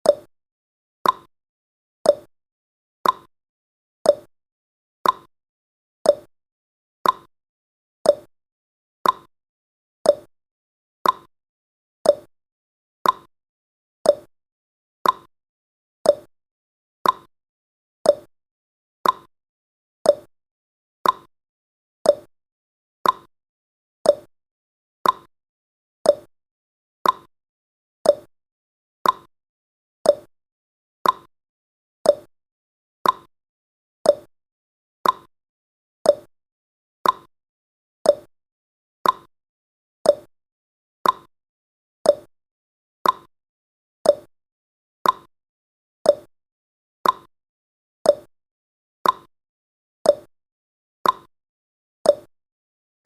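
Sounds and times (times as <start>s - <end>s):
timer ticking: 0.0s - 0.3s, 1.0s - 1.3s, 2.1s - 2.3s, 3.0s - 3.3s, 4.1s - 4.3s, 5.0s - 5.3s, 6.1s - 6.3s, 7.0s - 7.3s, 8.1s - 8.3s, 9.0s - 9.3s, 10.1s - 10.3s, 11.0s - 11.3s, 12.0s - 12.3s, 13.0s - 13.3s, 14.1s - 14.3s, 15.0s - 15.3s, 16.0s - 16.3s, 17.0s - 17.3s, 18.0s - 18.3s, 19.0s - 19.3s, 20.1s - 20.3s, 21.0s - 21.3s, 22.0s - 22.3s, 23.0s - 23.3s, 24.0s - 24.3s, 25.0s - 25.3s, 26.0s - 26.3s, 27.0s - 27.3s, 28.0s - 28.3s, 29.0s - 29.3s, 30.0s - 30.3s, 31.0s - 31.3s, 32.0s - 32.3s, 33.0s - 33.3s, 34.0s - 34.3s, 35.0s - 35.3s, 36.0s - 36.3s, 37.0s - 37.3s, 38.0s - 38.3s, 39.0s - 39.3s, 40.0s - 40.3s, 41.0s - 41.3s, 42.0s - 42.3s, 43.0s - 43.3s, 44.0s - 44.3s, 45.0s - 45.3s, 46.1s - 46.3s, 47.0s - 47.3s, 48.1s - 48.3s, 49.0s - 49.3s, 50.1s - 50.3s, 51.0s - 51.3s, 52.1s - 52.3s.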